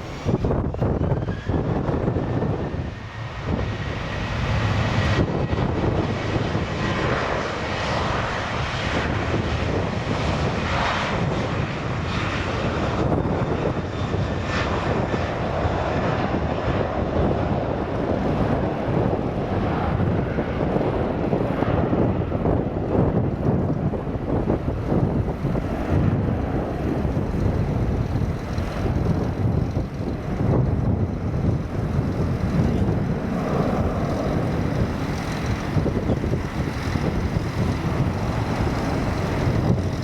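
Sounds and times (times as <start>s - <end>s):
jet engines at takeoff thrust: 0.0s - 40.0s.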